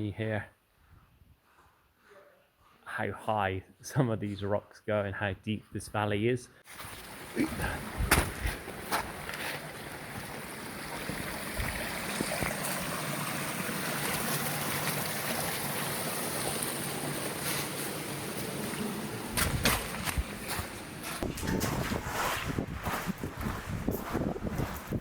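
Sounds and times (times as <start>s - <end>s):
stream water rushing: 6.7s - 21.0s
sharp knocks: 8.0s - 8.6s.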